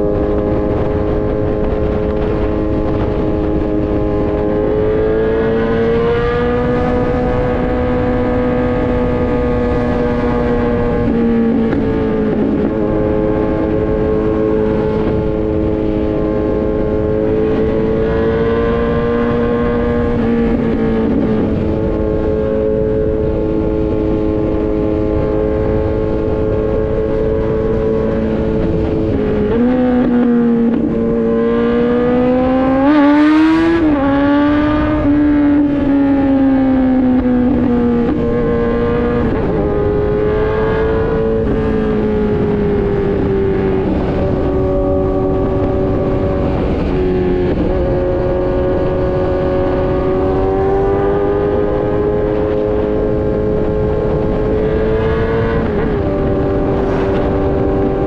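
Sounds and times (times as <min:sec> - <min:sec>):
motorcycle engine cruising: 0:00.0 - 0:58.0
wind noise: 0:00.0 - 0:58.0.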